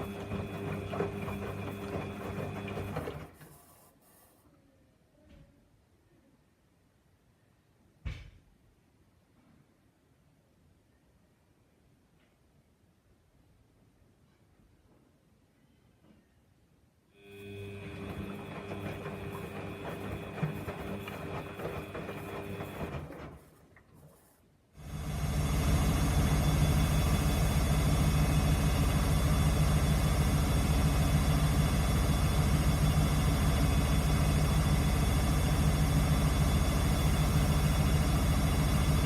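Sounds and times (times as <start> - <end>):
washing machine humming: 0.0 - 3.6, 17.2 - 39.0
motor humming at high speed: 24.9 - 39.0.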